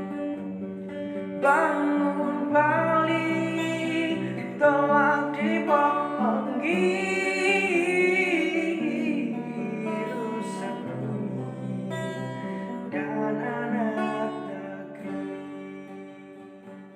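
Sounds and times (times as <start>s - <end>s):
guitar accompaniment: 0.0s - 16.9s
person singing long note: 1.4s - 11.6s.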